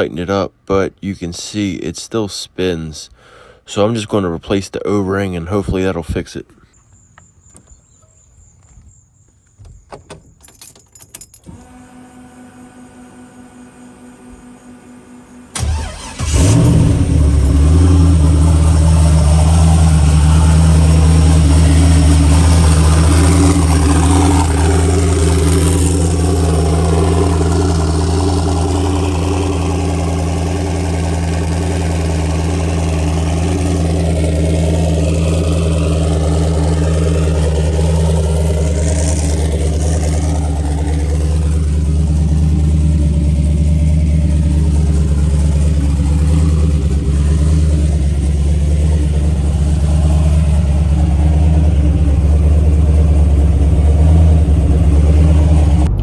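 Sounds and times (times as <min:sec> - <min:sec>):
car engine idling: 0:11.5 - 0:56.0.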